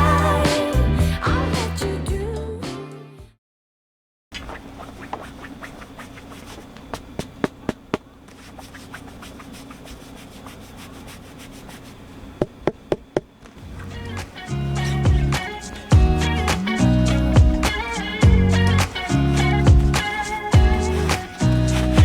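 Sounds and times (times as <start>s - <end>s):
low buzzing hum: 4.4s - 22.0s.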